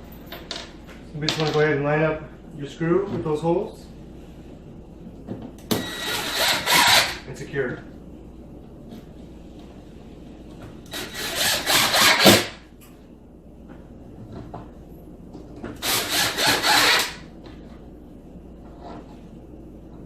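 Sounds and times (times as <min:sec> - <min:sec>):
power drill driving screws: 0:05.7 - 0:07.2, 0:10.9 - 0:12.5, 0:15.8 - 0:17.2.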